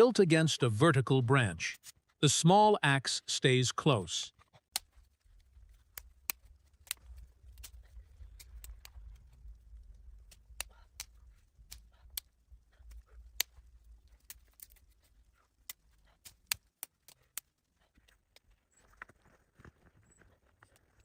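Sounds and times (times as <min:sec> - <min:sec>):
wood fire crackling: 0:03.8 - 0:19.7.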